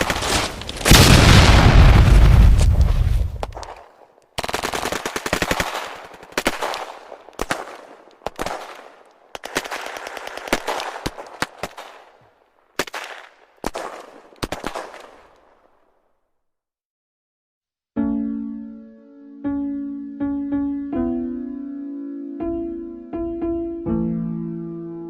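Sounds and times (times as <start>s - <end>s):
automatic gunfire: 4.4s - 12.1s
single gunshots: 12.8s - 15.4s.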